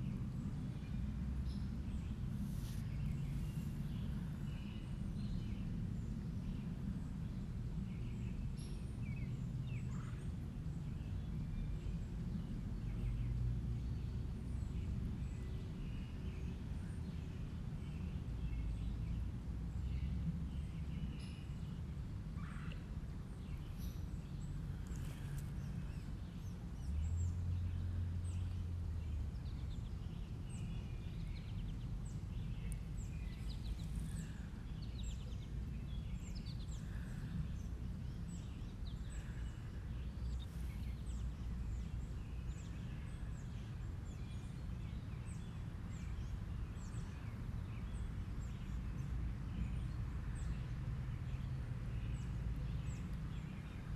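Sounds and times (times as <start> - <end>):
steady low rumble: 18.4 - 45.0.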